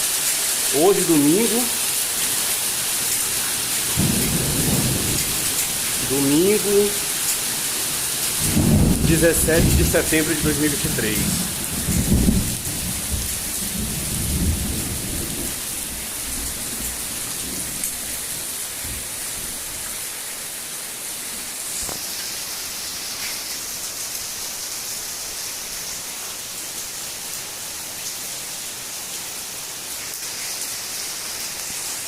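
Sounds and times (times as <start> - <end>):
heavy rain and hail: 0.0 - 32.0
low rumble of thunder: 3.9 - 6.1, 8.4 - 10.1, 11.1 - 18.1.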